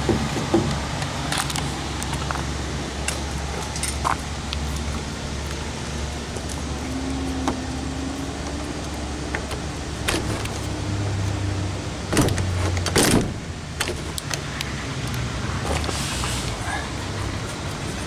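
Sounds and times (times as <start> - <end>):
door latch clicking: 9.4 - 10.7, 12.1 - 15.2
door handle clattering clacks: 9.4 - 11.0, 12.0 - 14.8.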